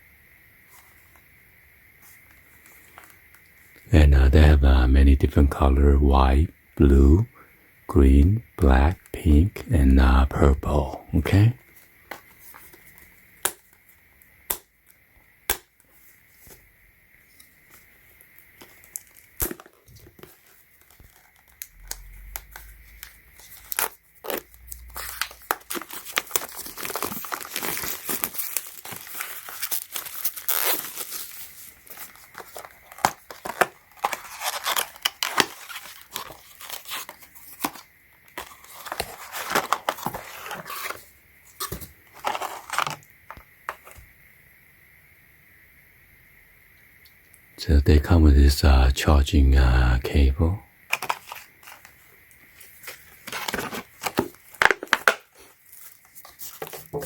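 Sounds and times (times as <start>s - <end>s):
packaging torn and crumpled: 18.8s - 37.8s, 42.1s - 43.0s, 50.9s - 51.9s, 52.9s - 57.0s.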